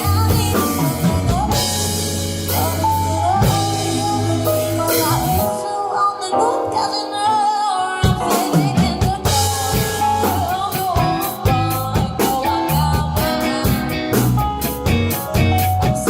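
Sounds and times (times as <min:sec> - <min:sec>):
bass and drums: 0:00.0 - 0:05.6, 0:08.0 - 0:16.0
wavering lead melody: 0:00.0 - 0:07.0
band playing pop-rock: 0:00.0 - 0:16.0.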